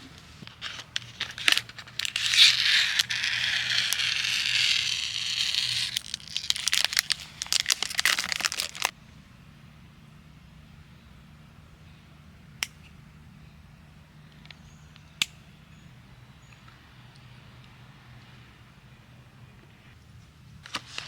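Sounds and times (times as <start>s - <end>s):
packaging crinkling and tearing: 0.4s - 8.9s.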